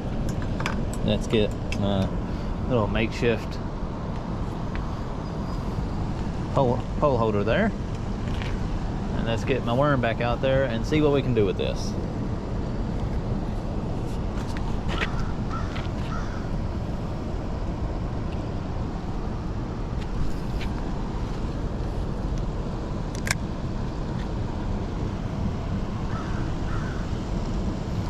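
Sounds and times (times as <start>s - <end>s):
bird calling: 14.9s - 16.6s, 26.1s - 27.1s.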